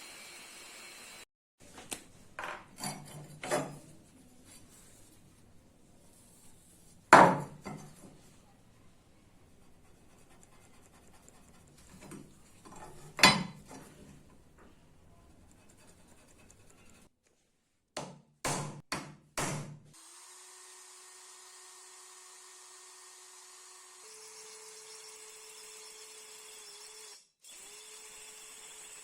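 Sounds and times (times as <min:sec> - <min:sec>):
small electric tool humming: 0:00.0 - 0:01.3, 0:20.0 - 0:29.0.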